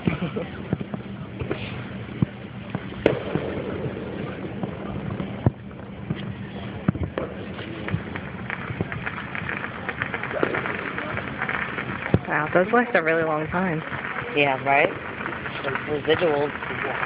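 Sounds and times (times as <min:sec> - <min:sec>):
distant fireworks bangs: 0:00.0 - 0:17.0
fireworks crackle: 0:00.0 - 0:17.0.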